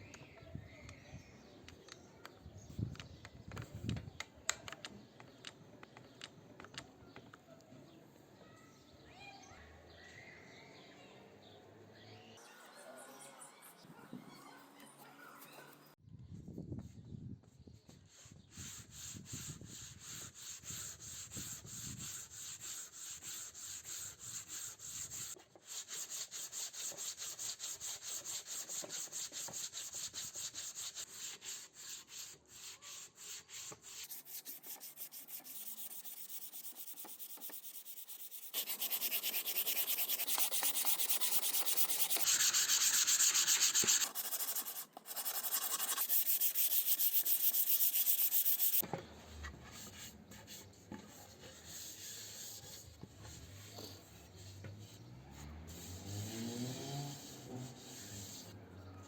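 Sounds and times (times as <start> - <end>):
sandpaper rubbing on wood: 18.1 - 48.8, 55.6 - 58.6.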